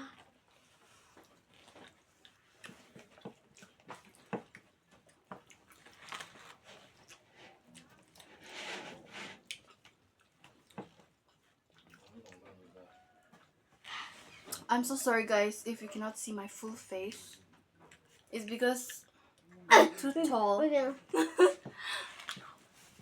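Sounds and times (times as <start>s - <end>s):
chewing and mouth smacks: 0.1s - 8.4s, 9.4s - 12.6s, 13.2s - 14.7s, 17.1s - 19.6s.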